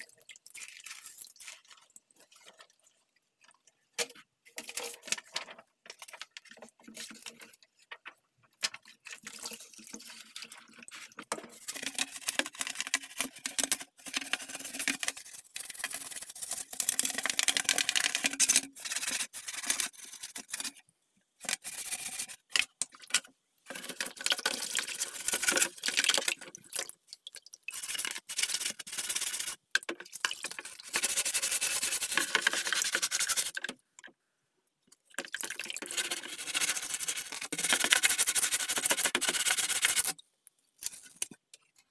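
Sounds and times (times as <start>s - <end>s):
brush scrubbing keyboard parts: 27.8s - 29.6s, 30.3s - 33.6s, 35.7s - 40.2s.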